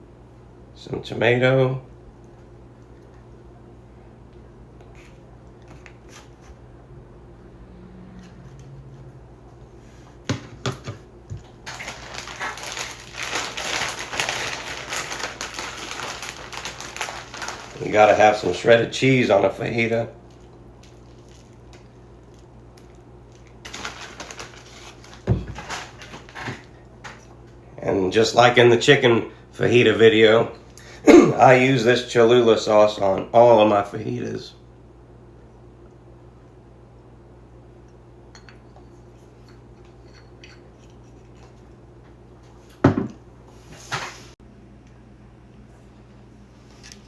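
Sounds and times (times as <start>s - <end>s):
package rustling and crinkling: 11.3s - 18.7s, 19.8s - 26.8s
object set down thump: 42.8s - 43.2s.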